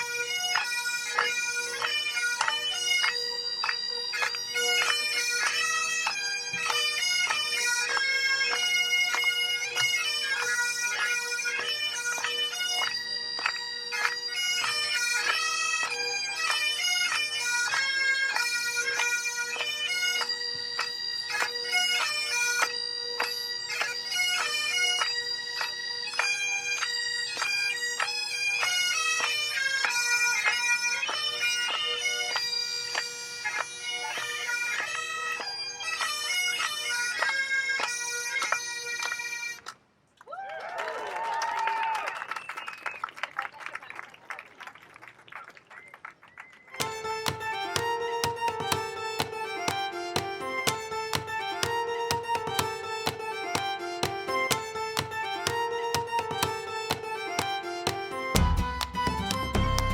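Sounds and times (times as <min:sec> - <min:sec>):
bagpipes playing a tune: 0:00.0 - 0:39.6, 0:46.8 - 0:59.9.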